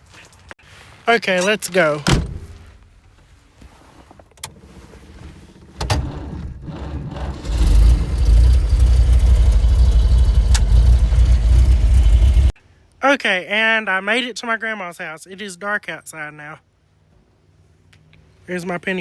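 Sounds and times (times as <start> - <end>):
car engine starting and rumbling: 4.4 - 12.6
click: 10.4 - 10.7.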